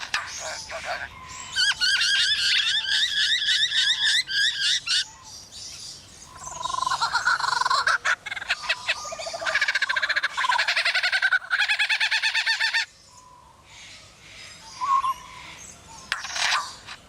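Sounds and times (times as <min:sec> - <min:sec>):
lyrebird rattling calls: 0:00.0 - 0:05.0, 0:06.4 - 0:12.9, 0:16.1 - 0:17.0.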